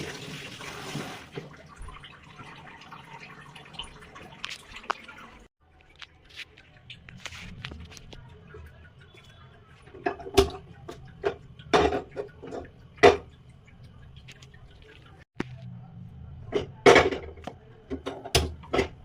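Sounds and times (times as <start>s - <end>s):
kitchen utensils clicking and knocking: 8.9s - 13.4s, 16.5s - 19.0s.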